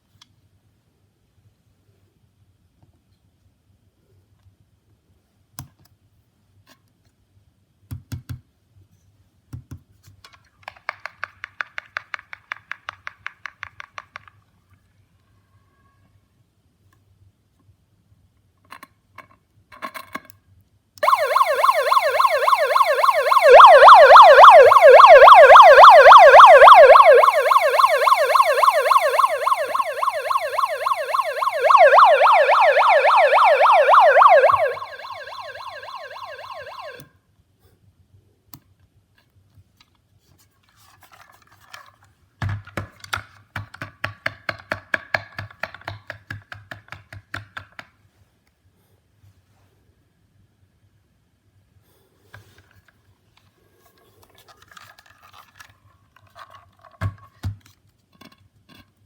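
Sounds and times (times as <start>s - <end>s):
megaphone siren wail: 21.0s - 37.0s.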